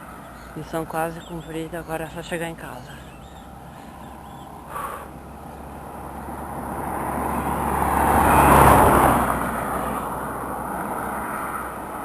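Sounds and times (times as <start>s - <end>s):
vehicle passing by: 0.0s - 12.0s.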